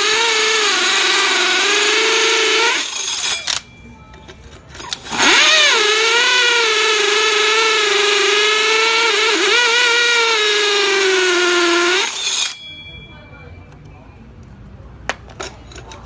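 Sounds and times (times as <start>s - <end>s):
cordless drill whining: 0.0s - 3.7s, 4.8s - 12.6s.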